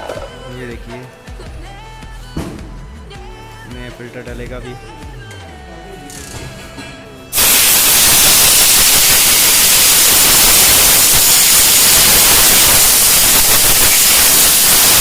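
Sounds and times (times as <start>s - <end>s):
compressed air hissing: 7.3s - 15.0s.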